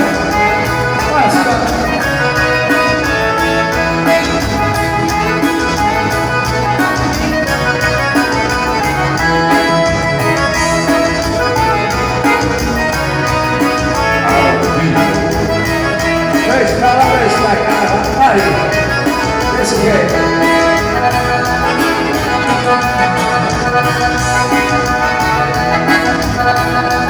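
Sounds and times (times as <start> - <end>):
band music with accordion: 0.0 - 27.0.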